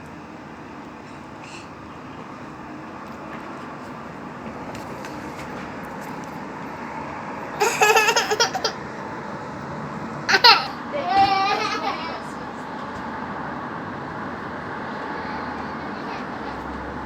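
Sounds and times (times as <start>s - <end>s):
child laughing: 7.6s - 8.8s, 10.3s - 12.4s.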